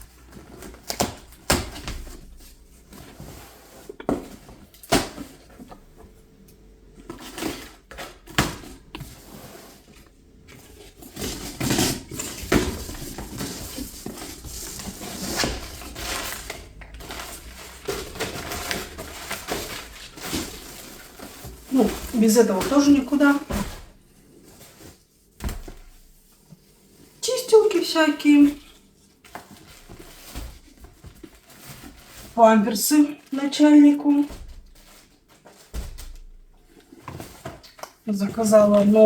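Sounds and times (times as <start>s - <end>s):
items knocking and clattering: 0.0s - 6.3s, 6.9s - 26.1s, 34.0s - 39.0s
packaging rustling: 7.0s - 26.1s.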